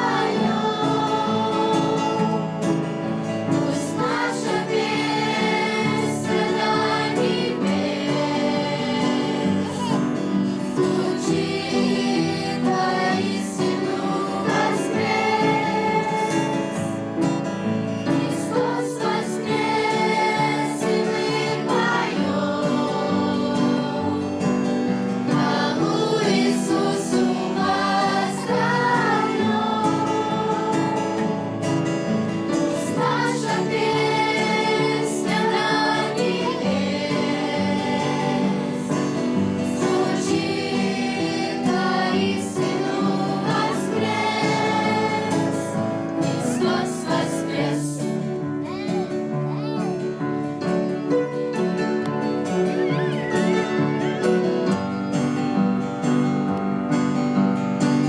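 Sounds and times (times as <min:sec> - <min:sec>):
choir singing: 0:00.0 - 0:58.0
instrumental accompaniment: 0:00.0 - 0:58.0.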